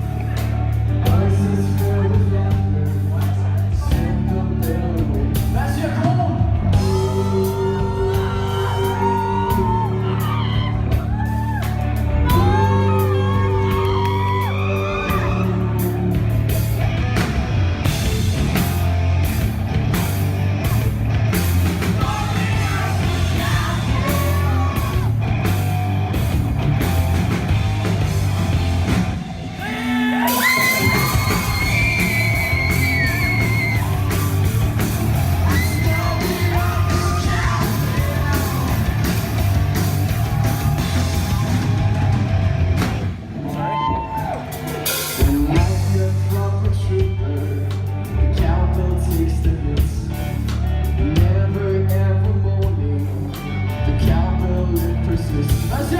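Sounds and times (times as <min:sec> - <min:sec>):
singer singing and shouting: 0:00.0 - 0:11.4, 0:20.5 - 0:25.5, 0:27.9 - 0:55.9
rock band playing live: 0:00.0 - 0:55.9.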